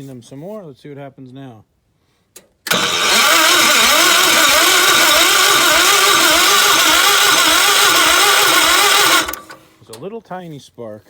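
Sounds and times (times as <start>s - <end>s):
tractor engine cranking without firing: 2.7s - 10.0s.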